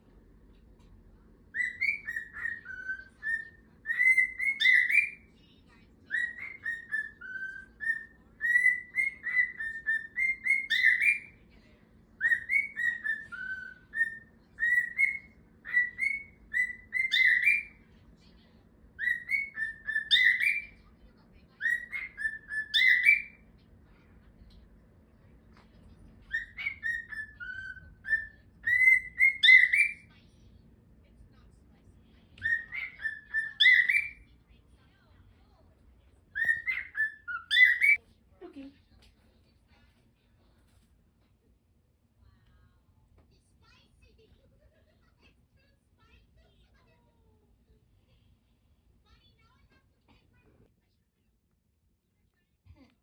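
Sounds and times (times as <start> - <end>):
cockatiel whistling a tune: 1.5 - 5.3, 6.1 - 11.4, 12.2 - 17.8, 19.0 - 20.8, 21.6 - 23.4, 26.3 - 30.1, 32.4 - 34.2, 36.3 - 38.0.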